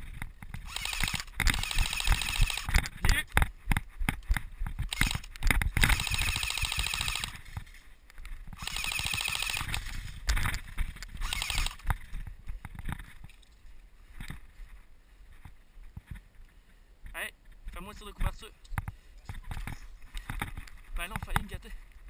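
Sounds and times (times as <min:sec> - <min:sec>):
airsoft gun full-auto bursts: 0:00.6 - 0:02.8, 0:04.9 - 0:07.4, 0:08.6 - 0:09.9, 0:11.2 - 0:11.8.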